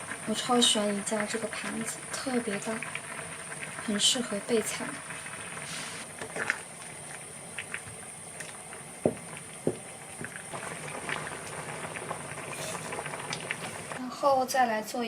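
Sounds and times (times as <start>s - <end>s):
food sizzling: 0.0s - 14.0s
utensil knocks: 9.0s - 10.4s.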